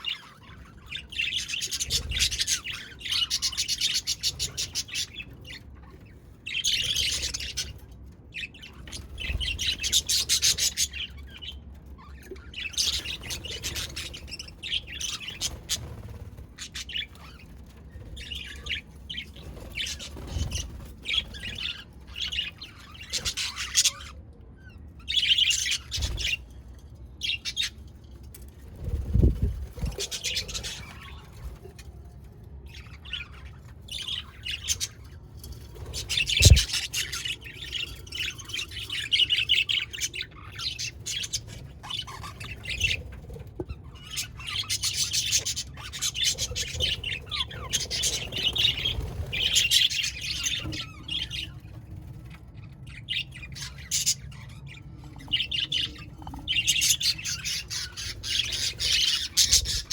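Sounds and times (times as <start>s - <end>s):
budgerigars chirping: 35.9s - 43.1s, 53.0s - 59.9s.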